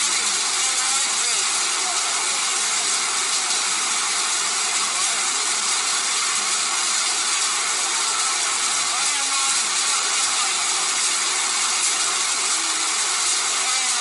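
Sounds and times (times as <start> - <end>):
hail and heavy rain on a pool: 0.0 - 14.0.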